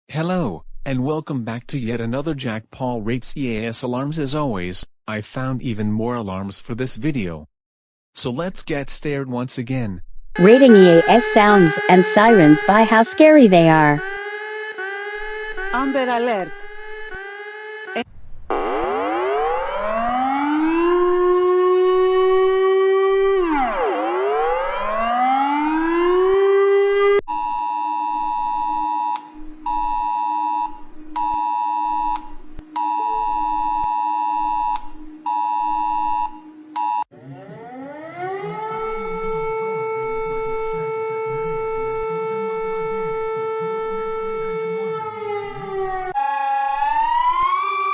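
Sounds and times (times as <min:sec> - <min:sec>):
multi-tone alert bursts: 0:10.4 - 0:14.1
rising siren: 0:10.4 - 0:27.2, 0:32.8 - 0:47.9.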